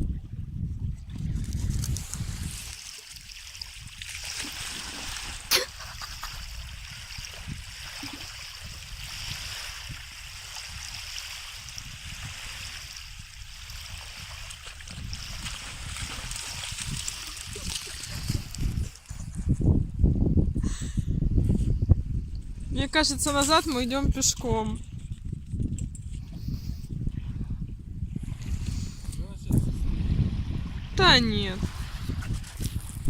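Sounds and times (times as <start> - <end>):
sea water splashing at shore: 2.0 - 18.7.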